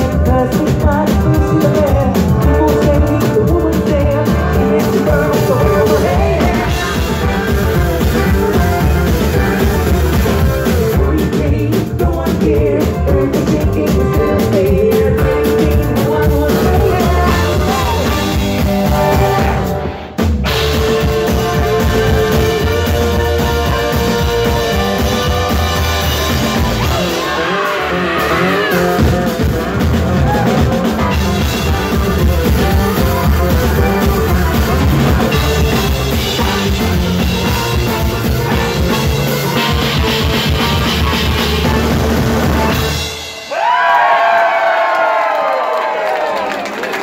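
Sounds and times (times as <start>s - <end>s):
folk band playing hard rock: 0.0s - 44.4s
crowd cheering and shouting: 16.2s - 19.8s, 21.7s - 40.3s, 42.8s - 47.0s.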